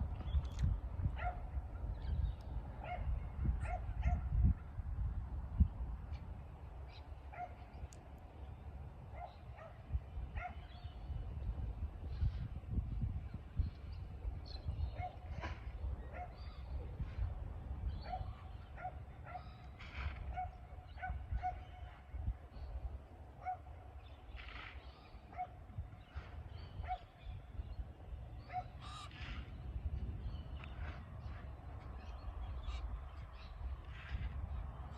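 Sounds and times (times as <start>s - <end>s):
birds calling: 23.4s - 34.2s
bird squawks: 28.5s - 29.5s.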